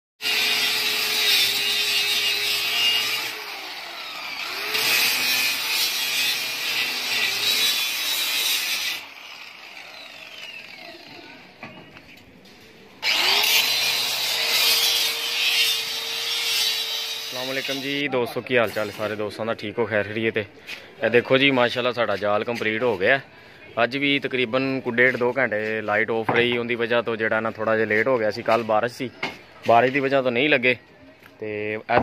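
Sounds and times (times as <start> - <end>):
electric power tool running: 0.2 - 11.3, 13.0 - 17.8.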